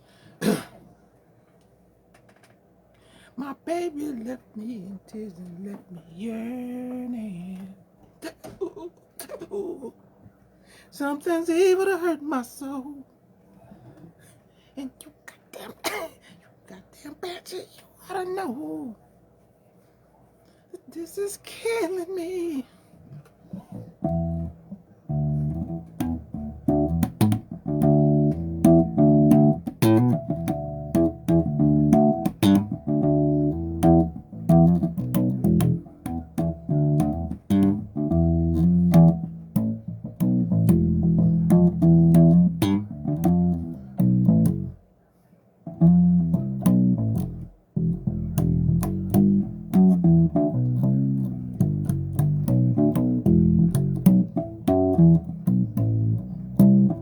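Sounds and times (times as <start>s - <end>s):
funky electric bass riff: 23.7s - 44.8s, 45.7s - 57.0s.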